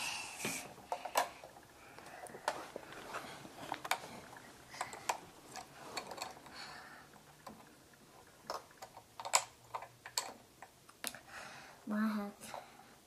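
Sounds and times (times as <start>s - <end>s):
plastic bricks clicking together: 0.9s - 1.5s, 8.5s - 11.2s.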